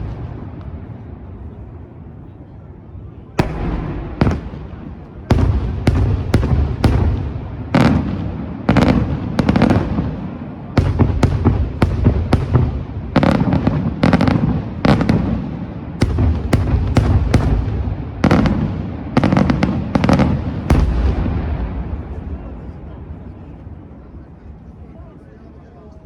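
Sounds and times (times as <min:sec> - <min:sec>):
fireworks bangs: 0:00.0 - 0:01.6, 0:03.4 - 0:23.6
low rumbling echo: 0:00.0 - 0:25.4.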